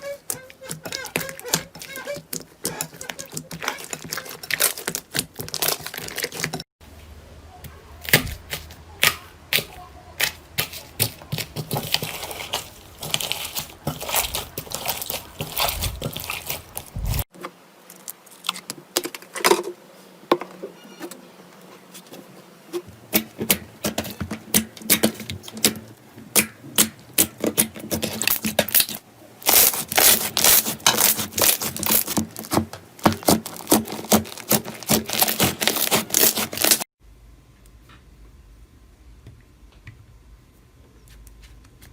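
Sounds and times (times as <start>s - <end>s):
slime crackling and popping: 2.7s - 6.6s, 10.7s - 17.2s, 28.2s - 36.8s
slime tearing: 2.7s - 6.6s, 10.2s - 17.2s, 28.0s - 36.8s.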